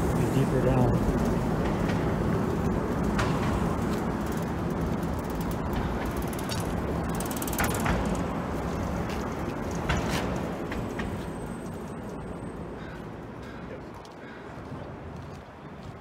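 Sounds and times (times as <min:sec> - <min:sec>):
fast mechanical ticking: 0:00.0 - 0:08.4
street traffic rumble: 0:00.0 - 0:16.0.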